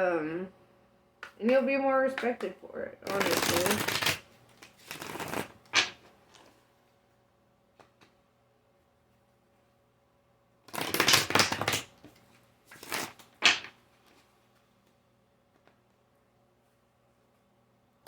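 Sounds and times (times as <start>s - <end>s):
cards being shuffled: 2.2s - 6.5s, 10.7s - 14.3s.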